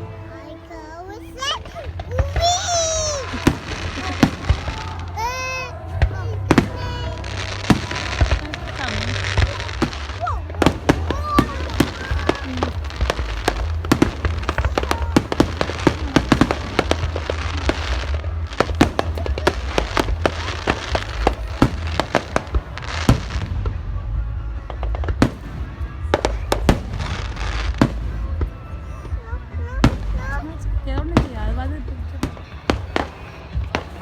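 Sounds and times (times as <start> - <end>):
low rumble: 1.3 - 34.0
fireworks popping and crackling: 1.4 - 34.0.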